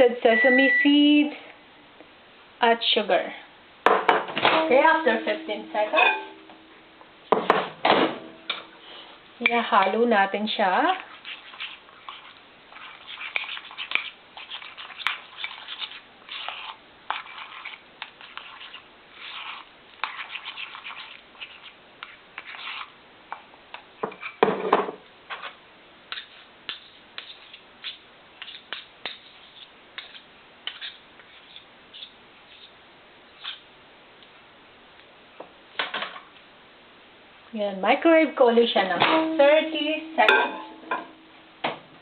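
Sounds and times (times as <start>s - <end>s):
utensil scraping dough in bowl: 9.0s - 24.4s, 25.3s - 32.8s, 33.4s - 33.6s.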